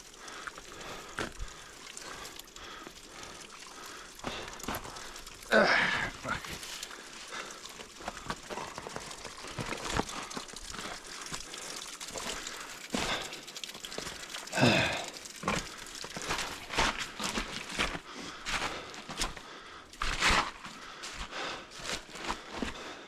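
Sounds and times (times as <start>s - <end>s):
heavy breathing: 0.1s - 23.0s
person grunting: 5.5s - 6.6s, 14.5s - 15.2s
boots scraping on ice and rock: 15.4s - 19.4s, 20.0s - 23.0s.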